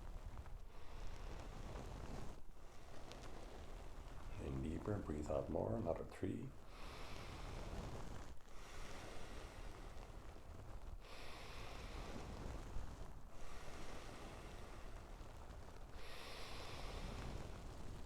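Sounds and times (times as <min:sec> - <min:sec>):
person breathing deeply: 0:06.6 - 0:15.3, 0:15.9 - 0:17.8.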